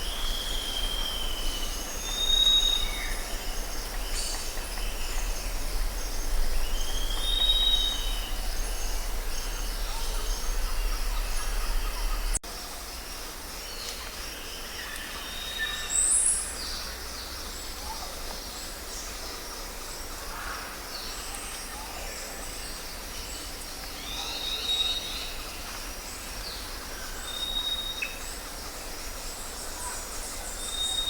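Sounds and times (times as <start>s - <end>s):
background hiss: 0.0s - 31.0s
low rumble: 3.2s - 12.4s.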